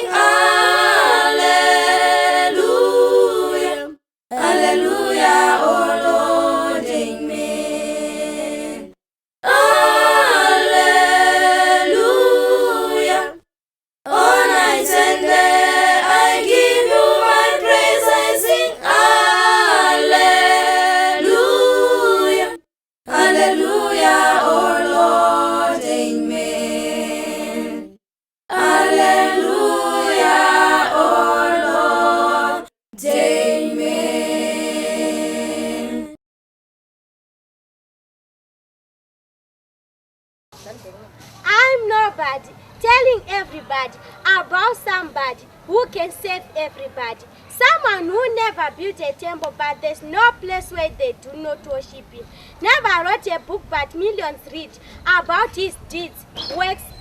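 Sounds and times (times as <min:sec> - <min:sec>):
vocal group singing a hymn: 0:00.0 - 0:13.4, 0:14.1 - 0:36.2.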